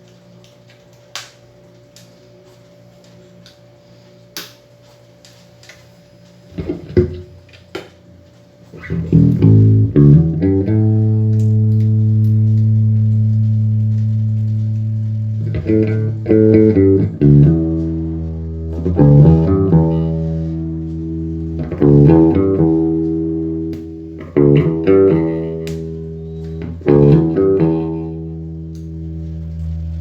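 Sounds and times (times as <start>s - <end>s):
amplifier hum: 1.1s - 30.0s
electric bass notes: 6.5s - 7.4s, 8.7s - 30.0s.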